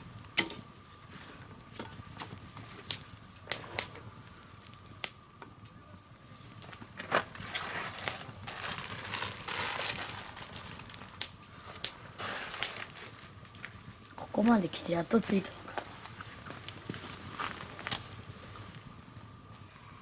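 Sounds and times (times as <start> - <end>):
log fire crackling and popping: 0.0 - 20.0
crinkling and rustling: 6.2 - 18.9.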